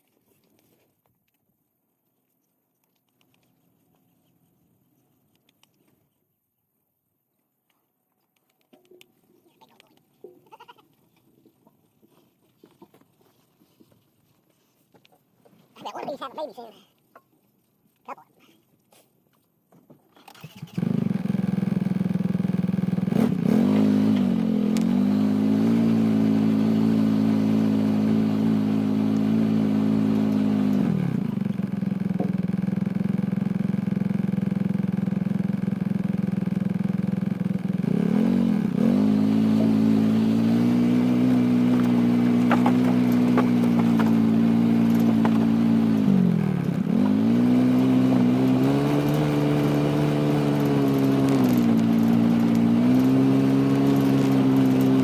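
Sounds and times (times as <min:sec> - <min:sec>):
vehicle engine running: 0:20.7 - 0:55.0.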